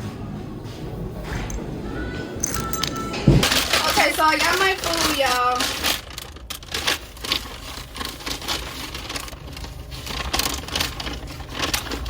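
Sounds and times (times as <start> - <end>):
food packaging crinkling: 3.4 - 12.0.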